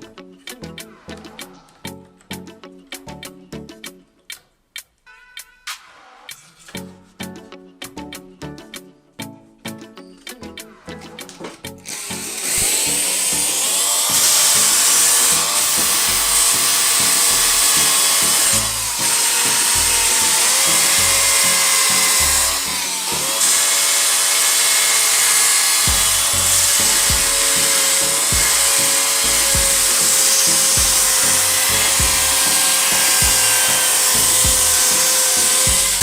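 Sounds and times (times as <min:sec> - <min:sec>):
background music: 0:00.0 - 0:36.0
power tool whining on wood: 0:11.8 - 0:36.0.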